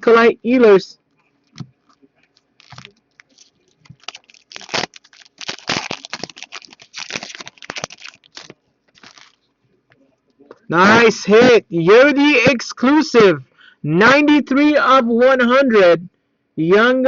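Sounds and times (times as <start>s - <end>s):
cards rustling and flicking: 1.5s - 9.4s.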